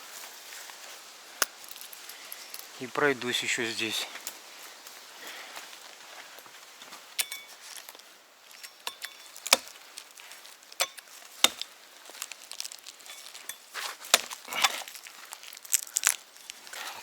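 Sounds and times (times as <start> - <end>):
blade chopping wood: 8.8 - 9.8, 10.8 - 11.7, 13.5 - 14.9.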